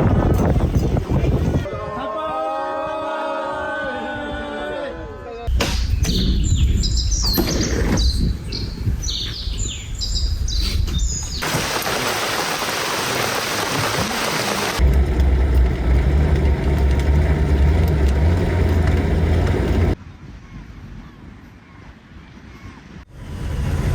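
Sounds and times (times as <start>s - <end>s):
small birds chirping: 5.9s - 11.4s
loud low hum: 14.8s - 20.0s, 23.1s - 23.9s
low rumble: 23.1s - 23.9s.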